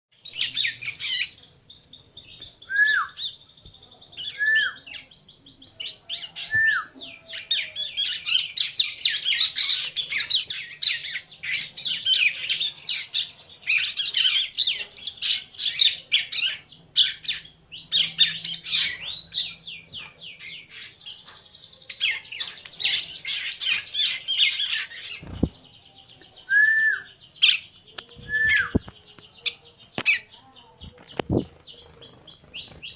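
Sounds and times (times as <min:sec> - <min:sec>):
bird down-slurred whistles: 0:02.6 - 0:03.2, 0:04.3 - 0:04.8, 0:26.5 - 0:27.2, 0:28.1 - 0:28.9
bird chattering trills: 0:21.9 - 0:32.9.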